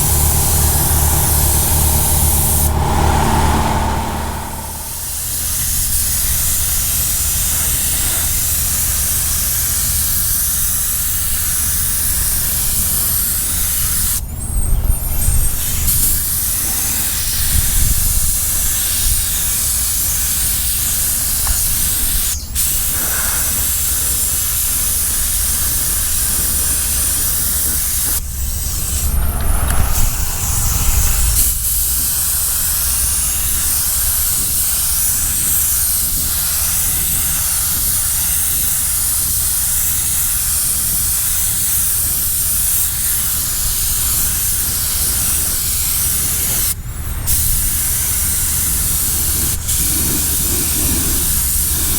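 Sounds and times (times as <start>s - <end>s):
spray gun hissing: 0.0s - 5.2s, 48.8s - 51.9s
low steady hum: 0.0s - 5.3s, 28.2s - 32.1s.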